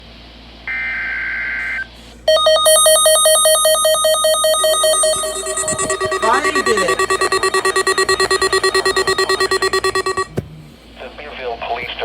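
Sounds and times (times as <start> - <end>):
rapidly pulsing electronic alert tone: 2.3 - 10.3
steady electronic tone: 2.3 - 10.3.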